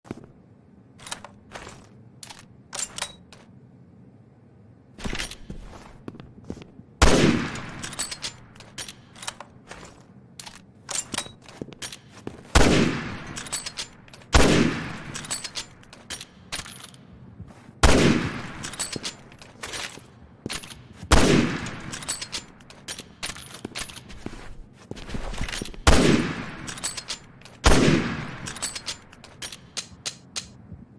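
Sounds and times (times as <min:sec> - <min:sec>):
rifle shots echoing: 0:07.0 - 0:08.4, 0:12.5 - 0:15.7, 0:17.8 - 0:19.2, 0:21.1 - 0:22.5, 0:25.8 - 0:28.7.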